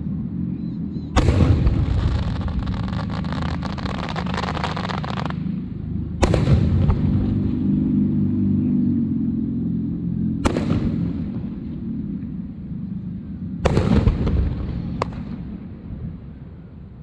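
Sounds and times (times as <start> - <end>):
steady low rumble: 0.0 - 17.0
firework bangs: 1.2 - 5.6, 6.2 - 8.0, 10.5 - 11.6, 13.7 - 15.6
fireworks crackling: 1.2 - 5.6.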